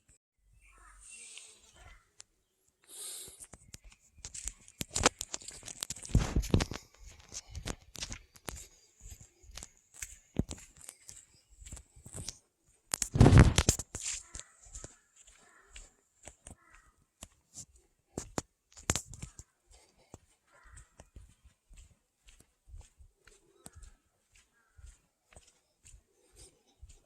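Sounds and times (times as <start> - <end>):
footsteps crunching on gravel: 3.8 - 19.6
rustling bursts: 13.0 - 14.3.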